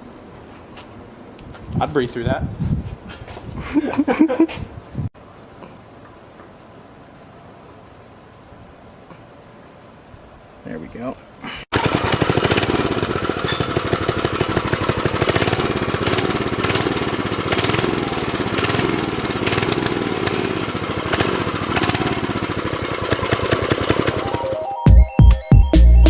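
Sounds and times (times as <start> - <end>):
mini bike engine running: 11.7 - 24.7.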